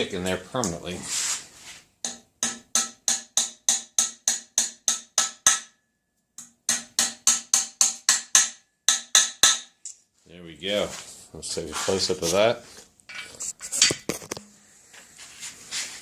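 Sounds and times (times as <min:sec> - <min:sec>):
hammer tapping metal rivets: 0:02.0 - 0:05.8, 0:06.4 - 0:10.0.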